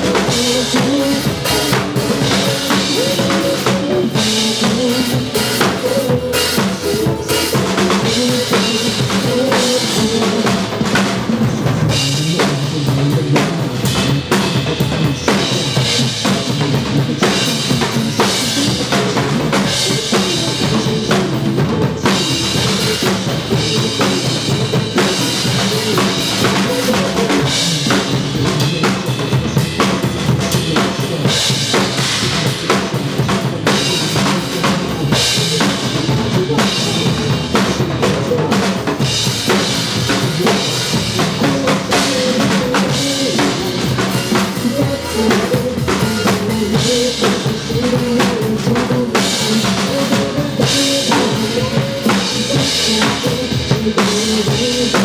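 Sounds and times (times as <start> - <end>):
drum kit beat: 0.0 - 55.0
recorded pop song: 0.0 - 55.0.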